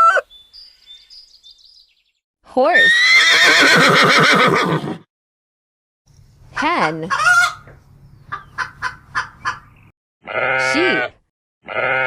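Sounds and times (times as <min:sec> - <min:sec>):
horse whinny: 0:02.7 - 0:05.1, 0:10.3 - 0:12.0
hen clucking: 0:06.5 - 0:09.9.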